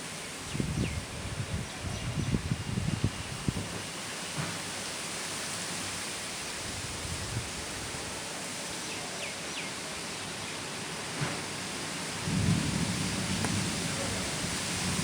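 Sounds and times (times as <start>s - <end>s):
wind storm rushing: 0.4s - 3.8s, 12.2s - 15.0s.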